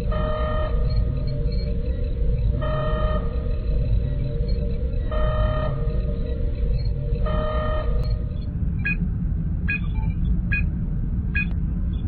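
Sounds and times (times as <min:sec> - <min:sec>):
low engine hum: 0:00.0 - 0:12.0.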